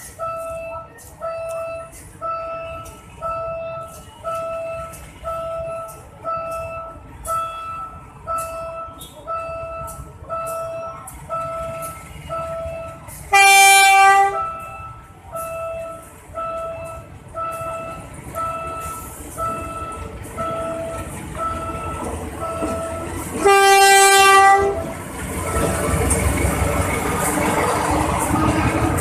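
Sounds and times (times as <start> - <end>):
level crossing warning signal: 0.0 - 29.0
train rumble: 0.0 - 29.0
locomotive horn blasts: 7.4 - 25.7.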